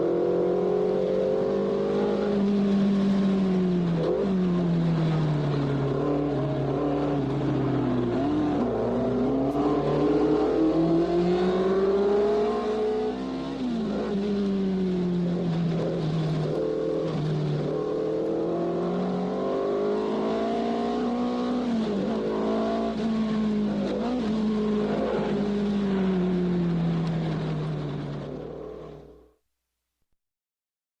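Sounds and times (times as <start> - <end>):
race car engine revving: 3.9 - 27.4.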